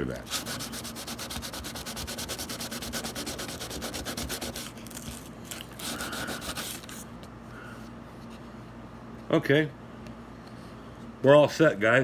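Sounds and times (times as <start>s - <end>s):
sandpaper rasping on metal rail: 0.3s - 4.6s.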